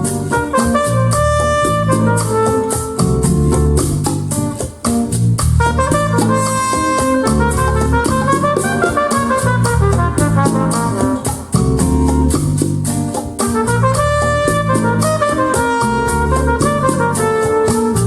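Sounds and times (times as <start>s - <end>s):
latin jazz with brass section: 0.0s - 18.0s
steady cymbal beat: 0.0s - 18.0s
strong bass notes: 3.0s - 6.6s, 7.3s - 8.7s, 9.4s - 13.0s.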